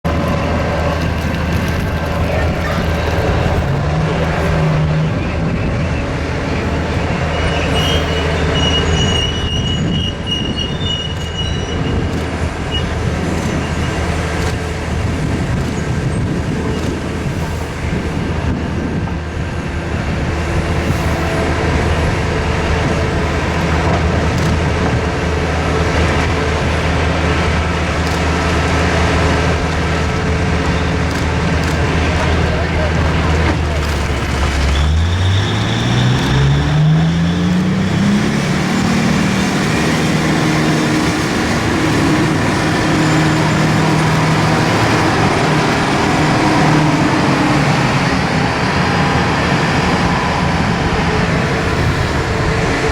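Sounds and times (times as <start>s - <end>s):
excavator engine drone: 0.0s - 52.9s
high metallic squeal: 2.2s - 14.2s, 33.8s - 50.8s.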